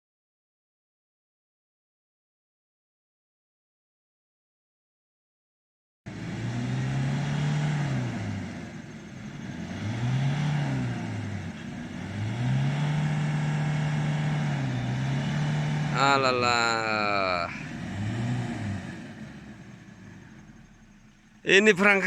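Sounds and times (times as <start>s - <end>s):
vehicle engine revving: 6.1s - 22.0s.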